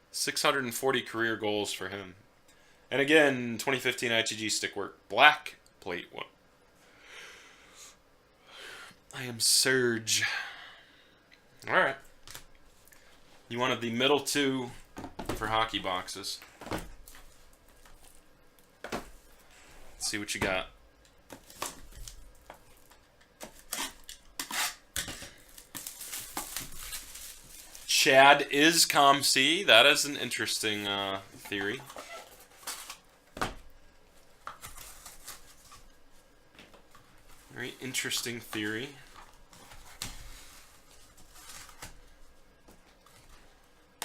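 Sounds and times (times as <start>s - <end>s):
cards and packaging rustling: 21.3s - 28.8s, 29.9s - 33.5s, 34.1s - 43.5s
pack wrappers crinkling: 21.4s - 28.2s.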